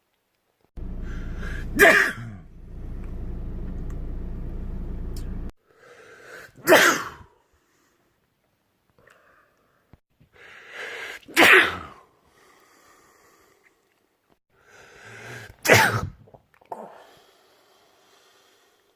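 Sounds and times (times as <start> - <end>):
person sneezing loudly: 1.4 - 2.4, 6.6 - 7.3, 11.3 - 12.0, 15.5 - 16.2
drawn-in breath: 5.6 - 6.6, 7.4 - 8.2, 9.0 - 11.2, 12.2 - 13.9, 14.5 - 15.6, 16.8 - 18.9.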